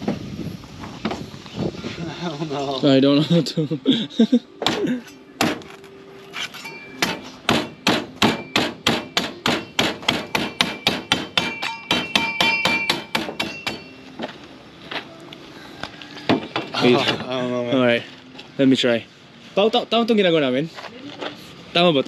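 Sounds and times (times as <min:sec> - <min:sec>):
machete chopping coconut husk: 0:04.6 - 0:05.7, 0:07.0 - 0:13.8.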